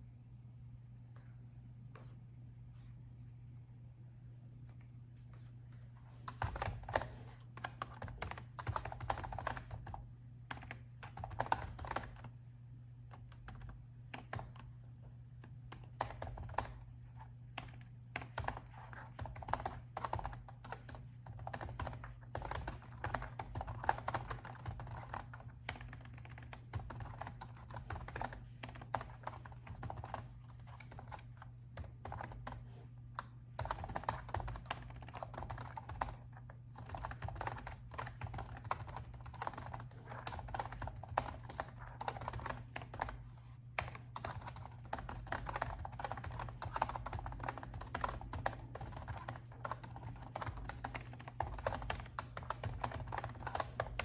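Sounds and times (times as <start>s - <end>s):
faint low hum: 0.0s - 54.0s
laptop keyboard typing: 6.3s - 12.4s, 13.0s - 14.8s, 15.4s - 54.0s.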